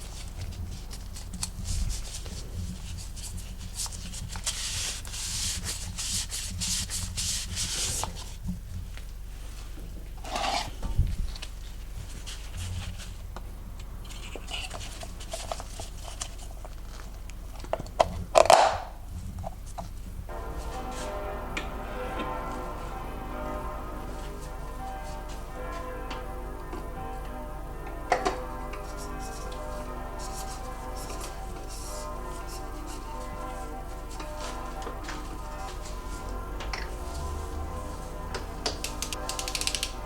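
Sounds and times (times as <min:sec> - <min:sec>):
rubbing and scraping strokes: 0:00.0 - 0:08.4.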